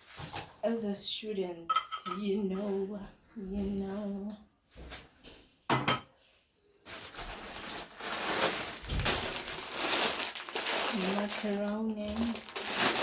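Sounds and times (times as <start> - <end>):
plastic bag rustling: 0.0 - 0.6, 6.8 - 13.0.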